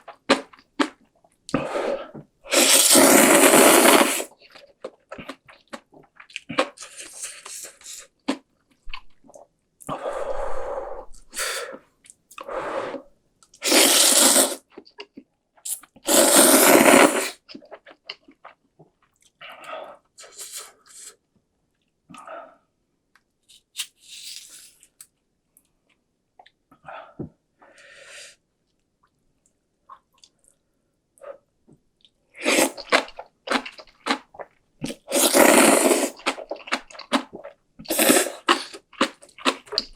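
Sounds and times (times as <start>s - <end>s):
slurping noodles: 1.6s - 4.4s, 12.4s - 14.7s, 16.0s - 17.4s, 32.4s - 39.9s
chewing: 32.0s - 39.9s.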